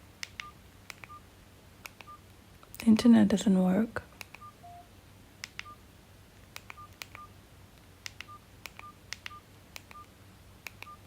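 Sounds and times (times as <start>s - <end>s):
short high keypad beeps: 4.4s - 4.8s.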